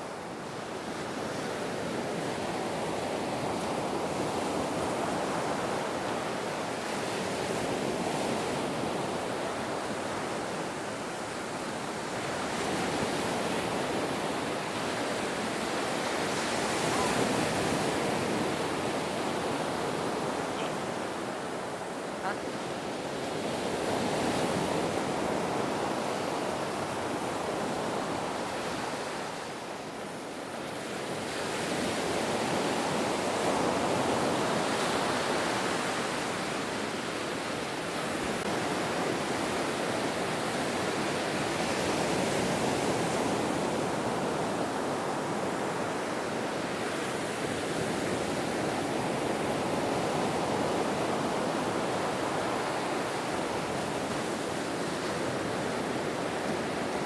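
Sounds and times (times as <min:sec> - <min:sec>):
ocean waves breaking: 0:01.2 - 0:29.6.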